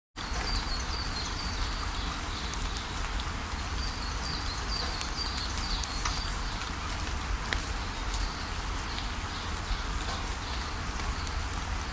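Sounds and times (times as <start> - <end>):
rain-like hiss: 0.2 - 11.9.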